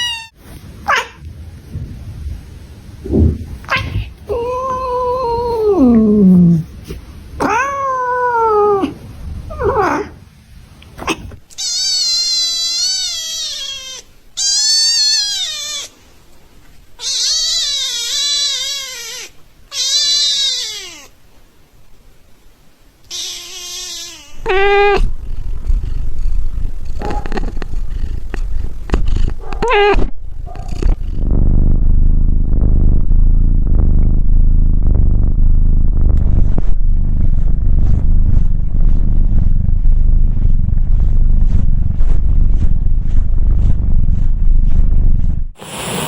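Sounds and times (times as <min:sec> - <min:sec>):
cats meowing: 0:00.0 - 0:00.3, 0:03.6 - 0:06.7, 0:07.4 - 0:09.0, 0:11.0 - 0:16.0, 0:17.0 - 0:21.1, 0:23.0 - 0:25.1, 0:29.4 - 0:30.1.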